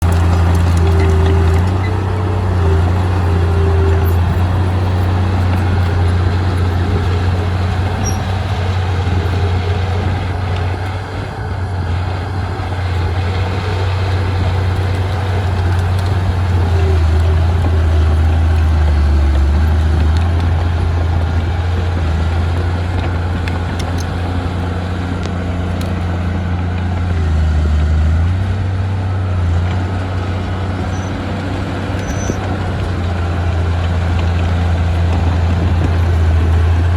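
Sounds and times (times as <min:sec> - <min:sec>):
heavy diesel engine running: 0:00.0 - 0:36.9.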